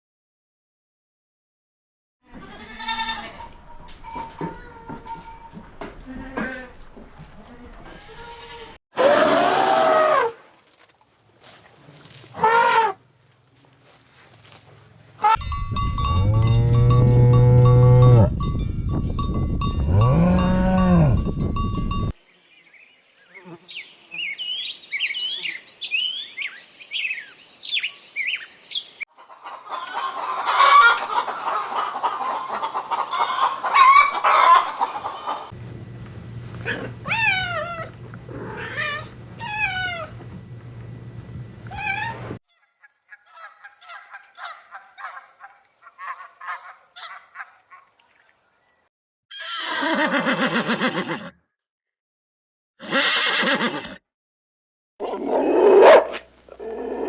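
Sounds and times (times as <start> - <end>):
chickens clucking: 2.4 - 8.1, 29.1 - 42.4
cow mooing: 19.9 - 21.2, 36.5 - 40.2.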